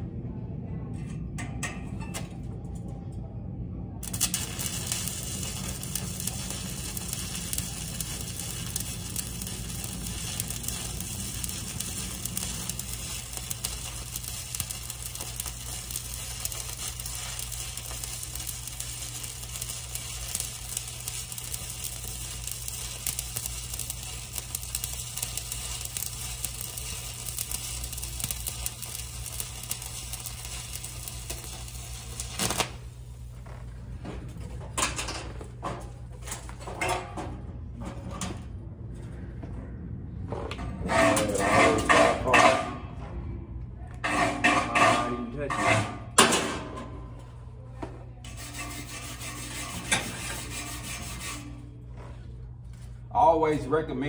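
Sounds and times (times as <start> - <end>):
low steady hum: 0.0 - 54.0
welding arc crackling sizzle: 4.0 - 33.8, 48.3 - 51.7.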